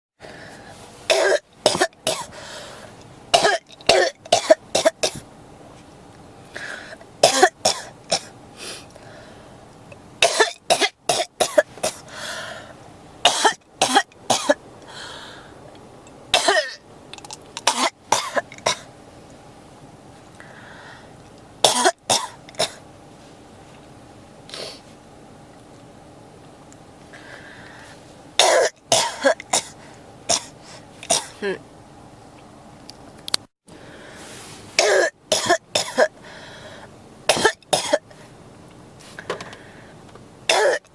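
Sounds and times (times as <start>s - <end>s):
person coughing: 1.1s - 2.3s, 3.4s - 5.2s, 7.2s - 8.3s, 10.2s - 12.0s, 13.3s - 14.6s, 16.4s - 16.8s, 17.6s - 18.9s, 21.6s - 22.8s, 28.4s - 31.6s, 34.8s - 36.2s, 37.3s - 38.0s, 40.5s - 40.9s.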